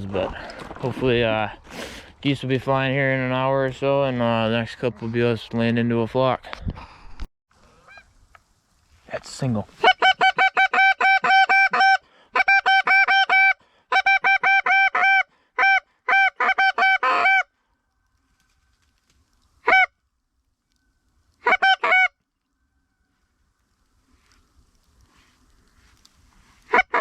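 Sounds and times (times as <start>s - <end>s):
goose call clucks: 9.8s - 17.5s, 19.6s - 19.9s, 21.4s - 22.1s, 26.7s - 27.0s.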